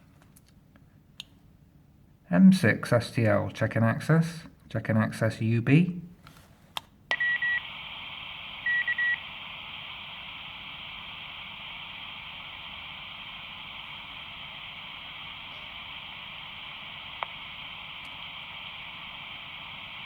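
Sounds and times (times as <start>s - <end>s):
radio channel hiss: 7.1s - 20.0s
radio high beeps: 7.1s - 20.0s.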